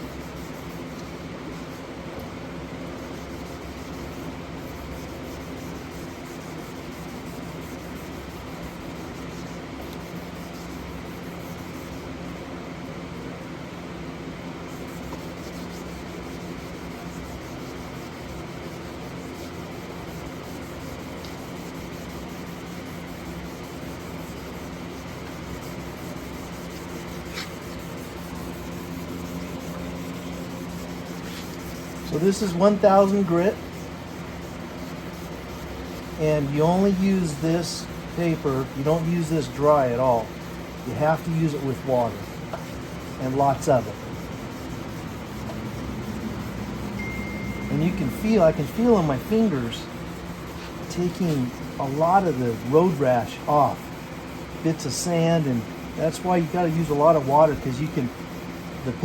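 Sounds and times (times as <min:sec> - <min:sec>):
wet sandpaper scrubbing plastic: 0:03.0 - 0:12.2, 0:14.6 - 0:47.0, 0:47.7 - 0:59.0
low hum: 0:43.9 - 0:50.0.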